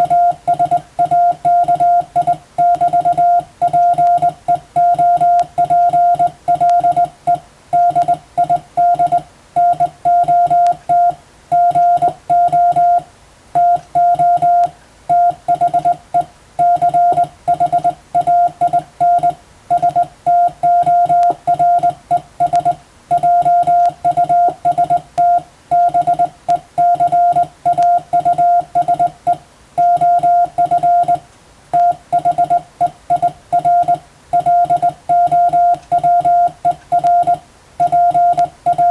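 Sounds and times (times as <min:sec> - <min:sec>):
morse code beeps: 0:00.0 - 0:13.0, 0:13.6 - 0:31.2, 0:31.8 - 0:38.9.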